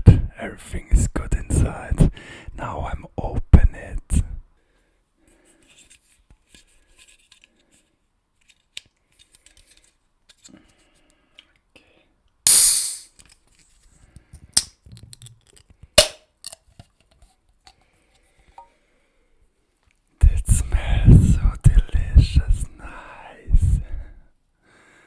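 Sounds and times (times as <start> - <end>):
can tab cracked open with hiss: 12.5 - 13.2.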